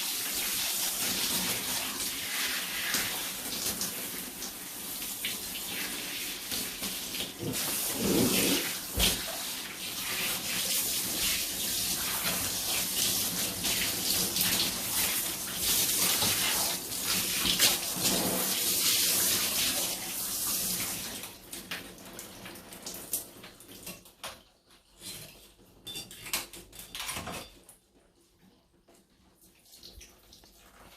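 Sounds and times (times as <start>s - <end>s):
water running from a tap: 0.0s - 24.2s, 29.4s - 30.9s
water dripping: 29.3s - 30.9s.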